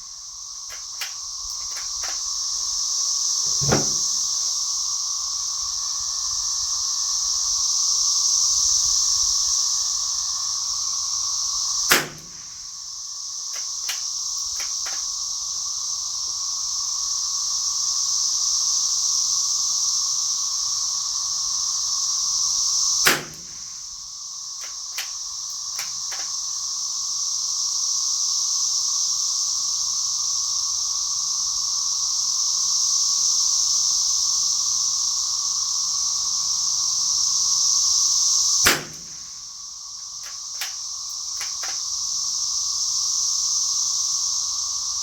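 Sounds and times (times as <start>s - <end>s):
cicada chorus: 0.0s - 45.0s
small metallic clicks: 0.7s - 2.3s, 13.6s - 15.0s, 24.6s - 25.2s, 25.8s - 26.3s, 40.2s - 41.9s
rifle shots: 3.5s - 4.3s, 11.9s - 12.6s, 23.1s - 23.7s, 38.7s - 39.4s.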